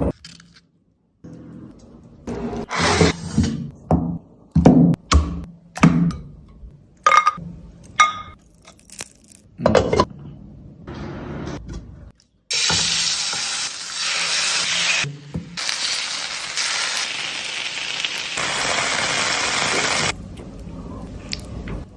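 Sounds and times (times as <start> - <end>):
chicken sizzling in oil: 12.5 - 20.1.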